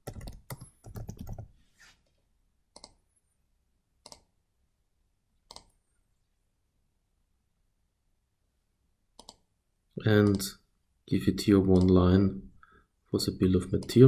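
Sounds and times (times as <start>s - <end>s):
computer keystrokes: 0.0s - 1.5s, 2.8s - 3.0s, 4.0s - 4.3s, 5.5s - 5.7s, 9.2s - 9.4s, 11.8s - 12.0s
computer mouse clicks: 2.7s - 3.0s, 4.0s - 4.3s, 5.5s - 5.8s, 9.2s - 9.5s, 11.8s - 12.0s.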